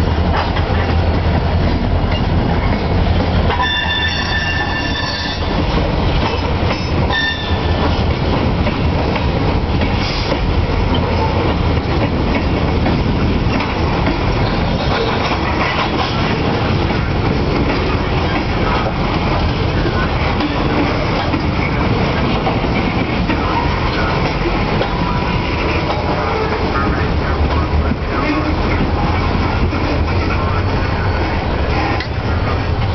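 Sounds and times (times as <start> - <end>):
locomotive engines and rolling cars: 0.0 - 32.9
train wheel squeal: 3.5 - 5.6, 6.8 - 7.9.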